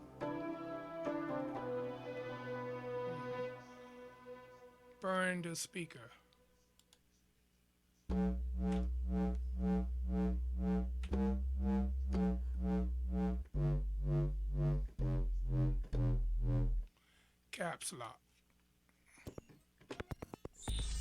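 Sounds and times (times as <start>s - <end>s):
throbbing synthesizer bass: 8.1s - 16.9s.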